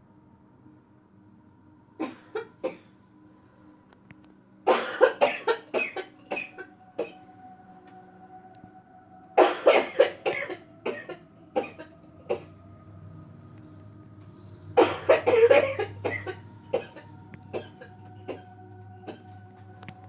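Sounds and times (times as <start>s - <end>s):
person coughing: 2.0s - 2.9s, 4.7s - 7.2s, 9.4s - 12.5s, 14.8s - 18.5s.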